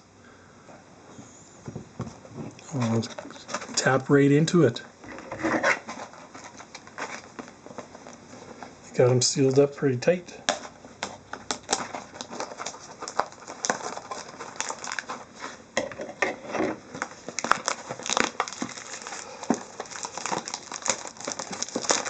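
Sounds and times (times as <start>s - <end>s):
plastic packaging crinkling: 2.3s - 4.3s, 5.1s - 9.7s, 10.4s - 15.6s, 16.8s - 22.0s.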